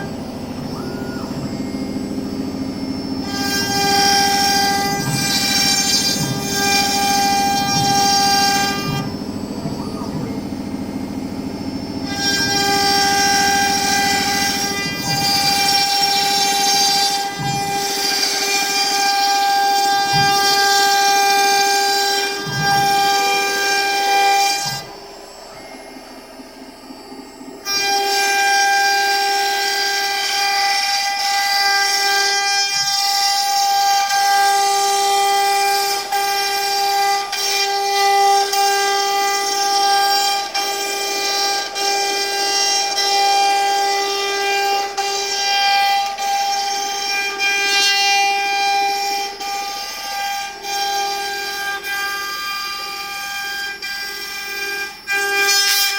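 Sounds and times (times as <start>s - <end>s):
router spindle whine: 0.0s - 55.9s.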